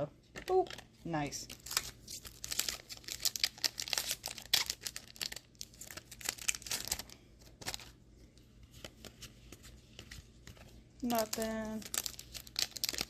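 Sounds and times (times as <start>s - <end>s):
card pack wrappers crinkling: 1.4s - 8.0s, 10.0s - 13.0s.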